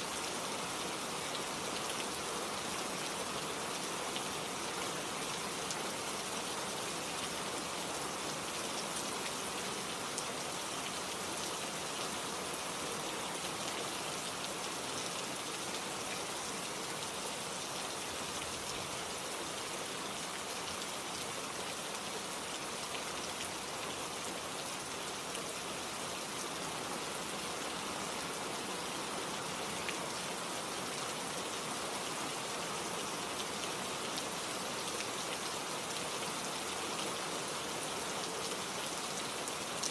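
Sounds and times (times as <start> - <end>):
rain pattering on surfaces: 0.1 - 12.3, 29.0 - 39.9.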